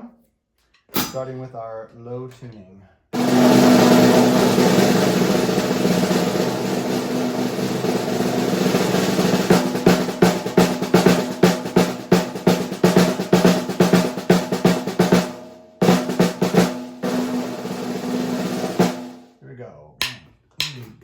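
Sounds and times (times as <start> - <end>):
snare drum roll and strokes: 3.2 - 19.3.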